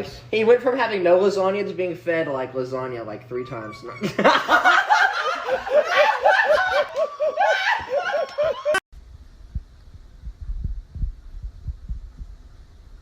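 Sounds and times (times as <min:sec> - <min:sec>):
person laughing: 0:04.0 - 0:08.8
low dull thumps: 0:09.0 - 0:13.0.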